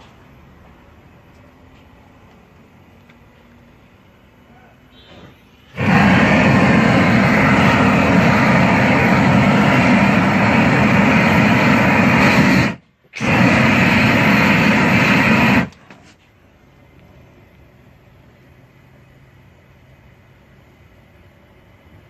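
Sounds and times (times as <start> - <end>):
propane torch rushing: 5.0 - 16.3.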